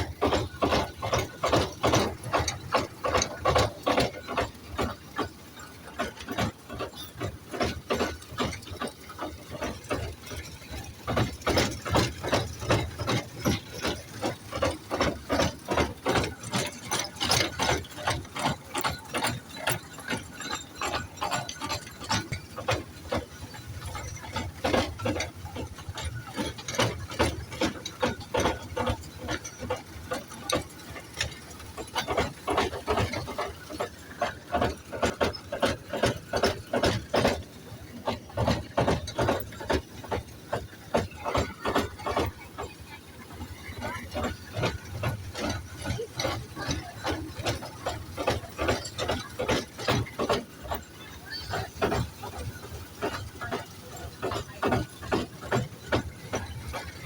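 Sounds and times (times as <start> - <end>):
toy train wheels clacking: 0.0 - 57.0.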